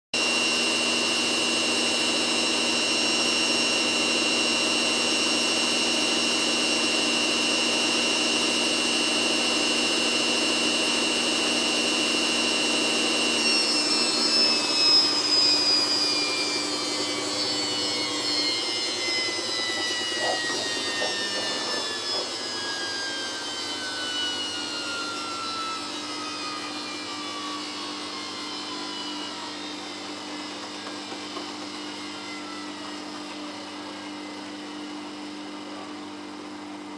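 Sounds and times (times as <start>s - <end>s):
washing machine drum spinning: 0.4s - 26.2s.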